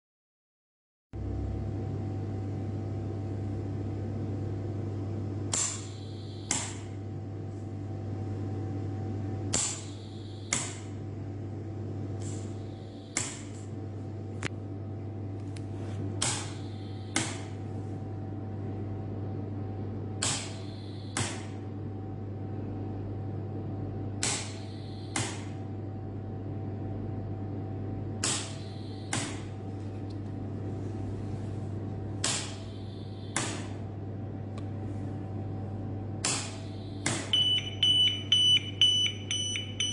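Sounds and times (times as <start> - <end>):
ventilator steady hum: 1.2 - 39.9
ventilator short sharp clicks: 5.5 - 6.9, 9.5 - 10.9, 20.2 - 21.6, 24.2 - 25.5, 28.2 - 29.5, 32.2 - 32.7, 36.2 - 37.3.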